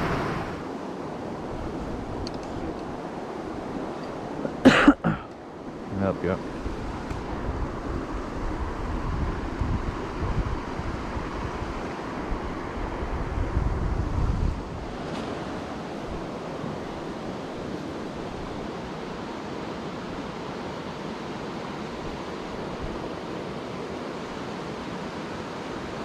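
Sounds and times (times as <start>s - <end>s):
wind buffeting microphone: 0.0s - 4.6s, 5.6s - 19.3s
rushing river water: 0.0s - 26.0s.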